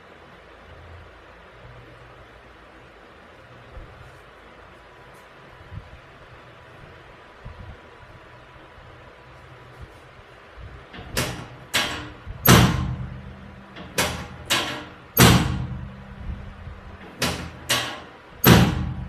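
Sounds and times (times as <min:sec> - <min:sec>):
heavy thuds with ringing hum: 0:10.8 - 0:19.0.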